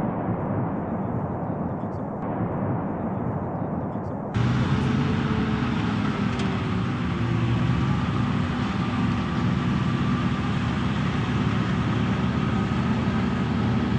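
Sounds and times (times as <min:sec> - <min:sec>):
large vehicle engine idling: 0:04.4 - 0:13.9.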